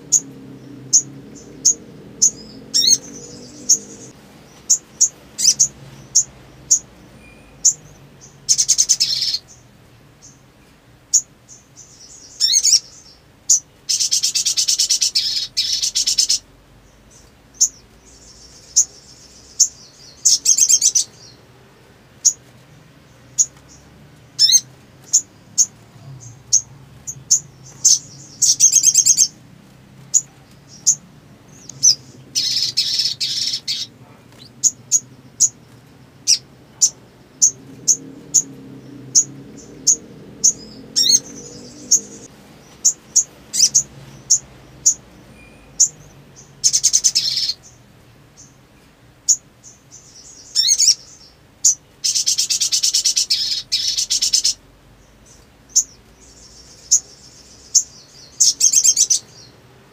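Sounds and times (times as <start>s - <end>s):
bird sharp high chirps: 0.0s - 9.6s, 11.1s - 21.4s, 23.4s - 29.4s, 30.1s - 38.5s, 39.1s - 47.8s, 49.3s - 54.6s, 55.2s - 59.5s.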